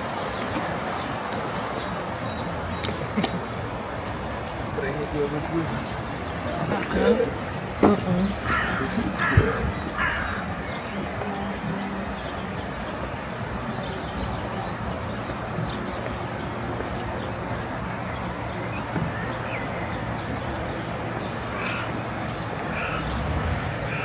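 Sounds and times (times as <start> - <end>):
outdoor background noise: 0.0 - 24.0
bird giving harsh calls: 7.0 - 10.5.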